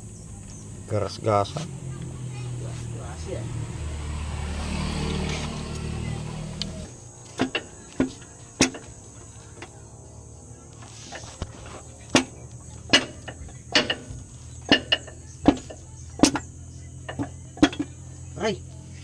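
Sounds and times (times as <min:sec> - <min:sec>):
metal tools knocking and clinking: 0:07.3 - 0:09.0, 0:12.1 - 0:18.0.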